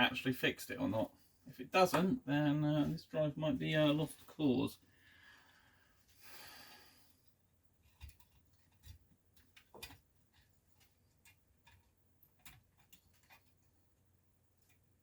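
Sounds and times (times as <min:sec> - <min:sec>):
small parts clicking and tapping: 0:07.8 - 0:13.8.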